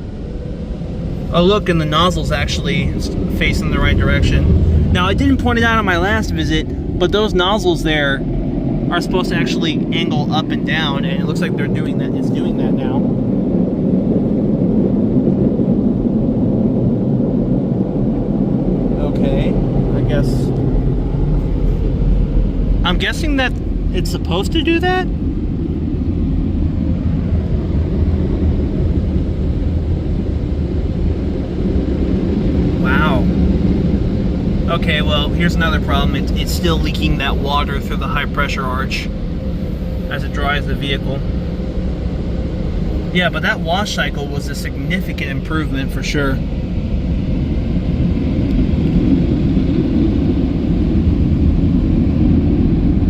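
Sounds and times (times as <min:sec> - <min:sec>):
car wash dryer blowers rumbling: 0:00.0 - 0:53.0.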